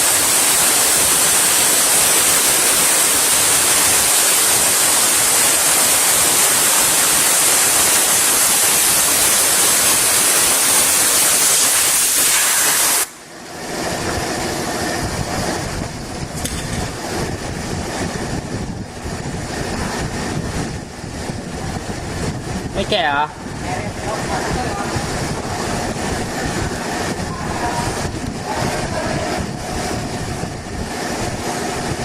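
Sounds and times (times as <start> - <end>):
loud steady hiss: 0.0 - 13.3
low rumbling noise: 13.1 - 32.0.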